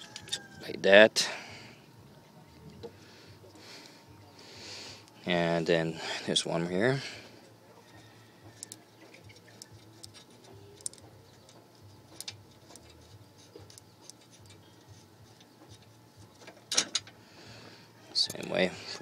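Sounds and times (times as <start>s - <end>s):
metal parts being handled: 0.0s - 0.6s, 8.4s - 17.2s
ratchet wrench clicking: 8.5s - 8.8s, 9.5s - 11.1s.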